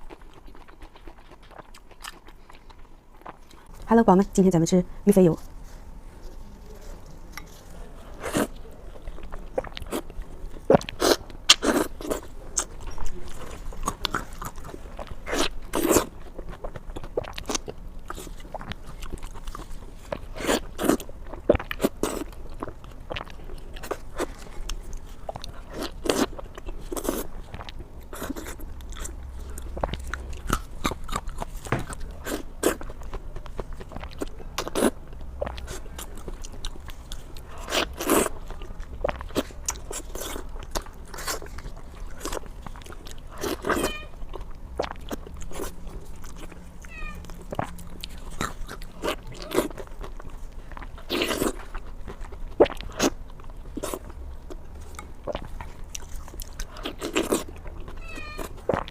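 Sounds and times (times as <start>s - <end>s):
person biting and chewing food: 0.0s - 3.9s, 7.1s - 58.9s.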